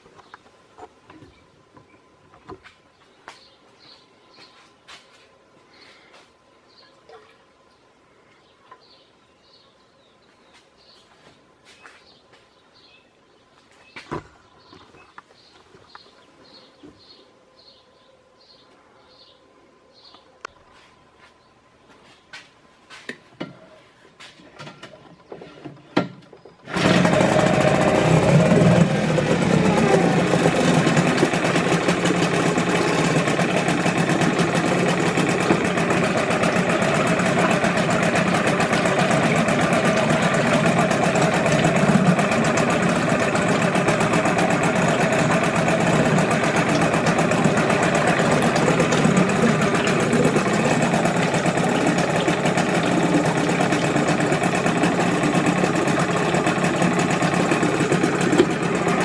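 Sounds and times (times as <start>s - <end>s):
outboard motor running: 26.7s - 59.0s.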